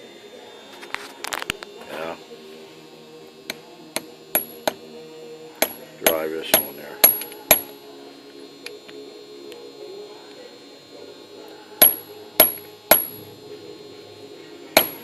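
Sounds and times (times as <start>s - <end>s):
hammer striking metal: 3.5s - 4.8s, 5.6s - 7.8s, 11.8s - 13.3s, 14.8s - 15.0s.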